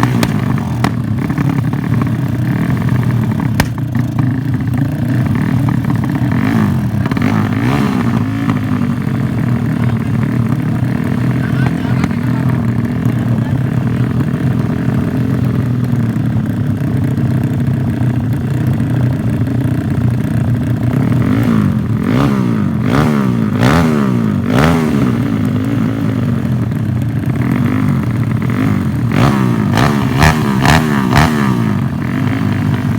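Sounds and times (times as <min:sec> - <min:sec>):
engine popping: 0:00.0 - 0:22.9
motorcycle engine revving: 0:00.0 - 0:32.9.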